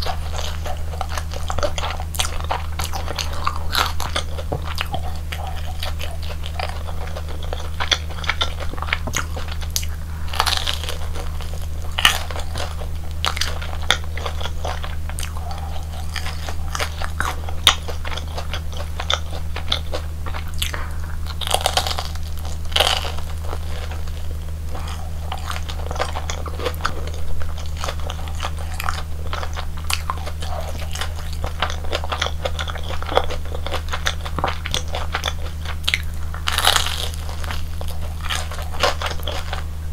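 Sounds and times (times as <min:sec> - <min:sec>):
crunchy food chewing: 0:00.0 - 0:39.9
steady low hum: 0:00.0 - 0:39.9.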